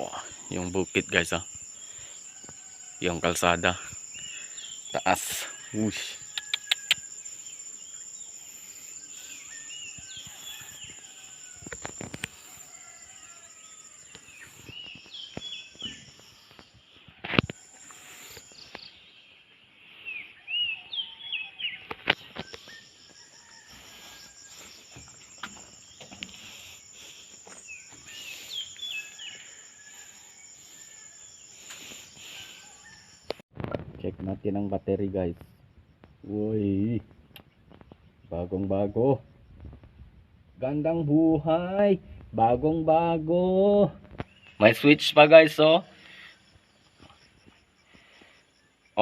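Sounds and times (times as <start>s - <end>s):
birds chirping: 0.0s - 33.4s
insect drone: 0.0s - 49.0s.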